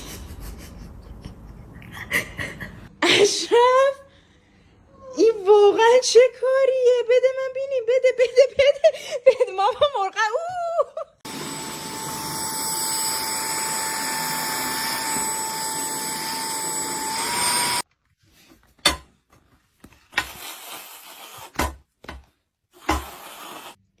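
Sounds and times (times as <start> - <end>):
small electric motor whining: 11.3 - 17.8.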